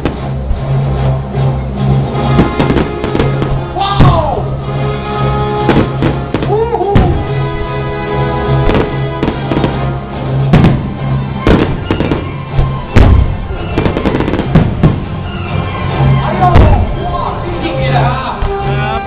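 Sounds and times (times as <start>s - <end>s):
fireworks bangs: 0.0s - 0.4s, 2.2s - 4.4s, 5.6s - 7.8s, 8.5s - 15.8s, 16.5s - 17.0s.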